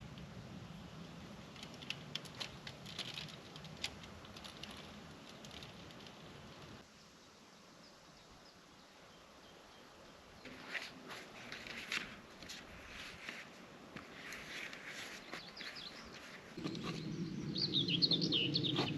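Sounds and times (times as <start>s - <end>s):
handling clicks and rustling: 1.5s - 6.8s
faint bird chirps: 15.0s - 18.9s
low rumble: 16.6s - 18.9s.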